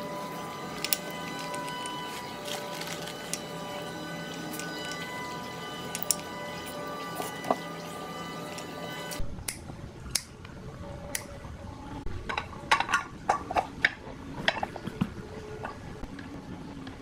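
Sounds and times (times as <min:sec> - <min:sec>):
metal parts and tools clinking: 0:00.7 - 0:03.4, 0:05.9 - 0:07.6.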